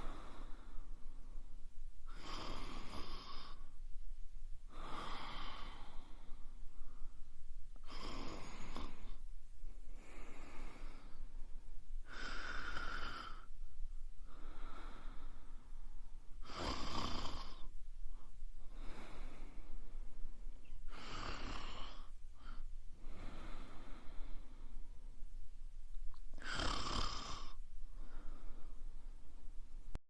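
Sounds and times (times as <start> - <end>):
soft breaths: 0.0 - 30.0
woman snoring: 2.1 - 3.7, 4.7 - 6.3, 7.8 - 9.2, 12.0 - 13.5, 16.4 - 17.7, 20.9 - 22.2, 26.4 - 27.6.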